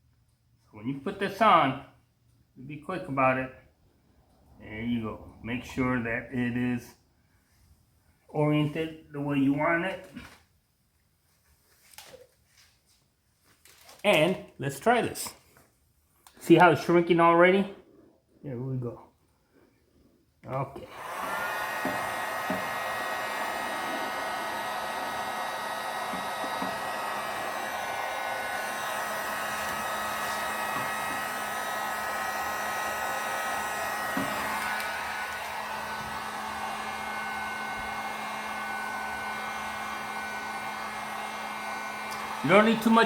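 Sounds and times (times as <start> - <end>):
heat gun blowing air: 20.8 - 43.0.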